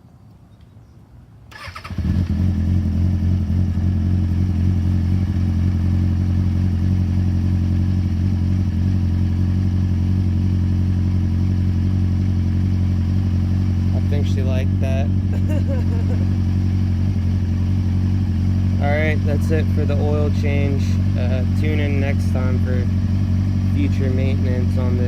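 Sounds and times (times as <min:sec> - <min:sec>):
motorcycle engine cranking on starter: 0:01.5 - 0:02.5
motorcycle engine idling: 0:01.5 - 0:25.0.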